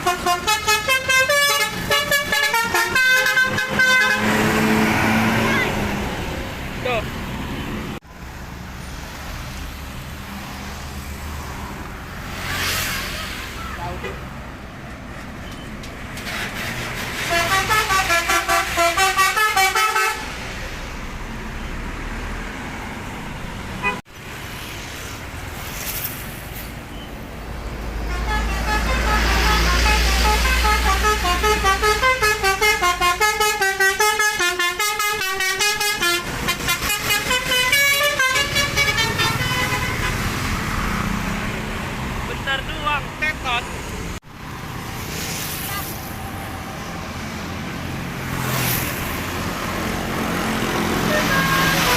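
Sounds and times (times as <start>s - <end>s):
multi-tone bus air horn melody: 0.0s - 4.8s, 16.2s - 20.4s, 23.8s - 24.0s, 28.1s - 40.3s, 51.0s - 51.9s
bus engine rumbling: 0.0s - 51.9s.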